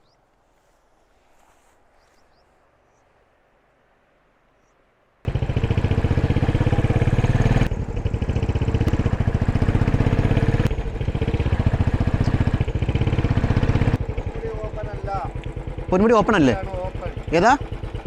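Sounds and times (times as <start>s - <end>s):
motorcycle engine running: 5.3s - 18.0s.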